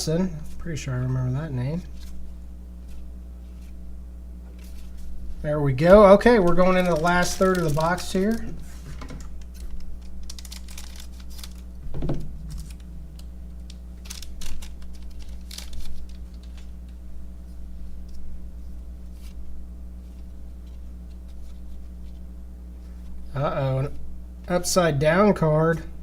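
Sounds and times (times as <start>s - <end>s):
cards clicking and rustling: 5.9s - 17.0s
wrapper crinkling: 5.9s - 17.0s.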